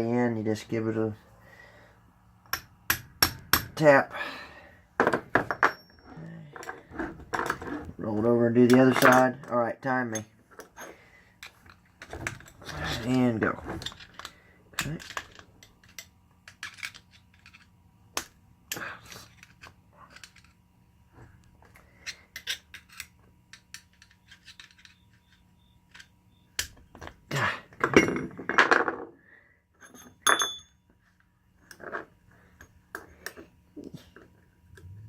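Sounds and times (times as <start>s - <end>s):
metal clink ringing: 5.5s - 6.1s, 29.8s - 30.8s
metal tools clicking and scraping: 5.5s - 17.7s, 18.7s - 20.6s, 21.6s - 28.4s, 29.8s - 30.8s.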